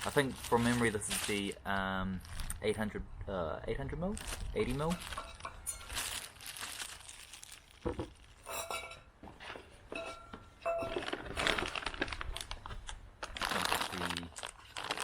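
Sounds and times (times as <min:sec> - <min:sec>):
plastic packaging crinkling: 0:00.0 - 0:02.7, 0:04.1 - 0:08.6, 0:10.7 - 0:15.0
parts clinking and knocking: 0:04.9 - 0:06.1, 0:07.8 - 0:11.4.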